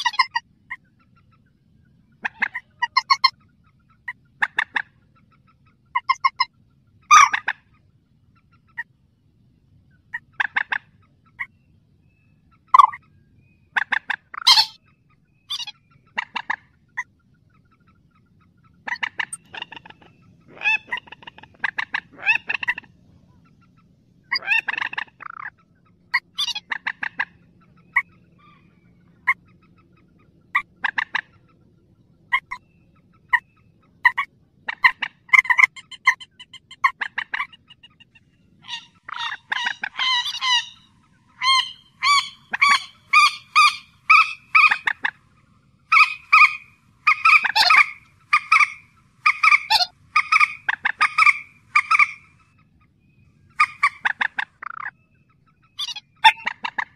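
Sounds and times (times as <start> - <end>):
rail bird calling sharp notes: 14.3 - 14.8, 38.6 - 45.1, 45.9 - 52.4, 55.8 - 56.5.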